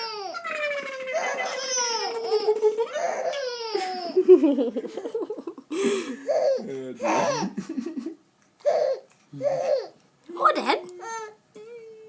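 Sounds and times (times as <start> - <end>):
baby laughing and giggling: 0.0 - 5.2, 8.6 - 10.0.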